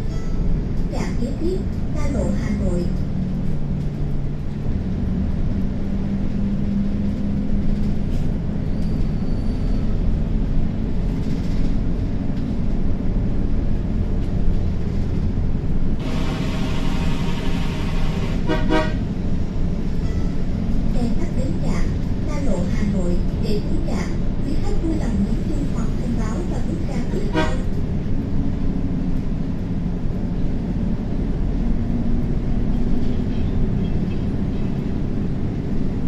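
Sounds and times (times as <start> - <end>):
bus engine and road rumble: 0.0 - 36.0
vehicle horn blast: 16.0 - 19.0, 27.3 - 27.7.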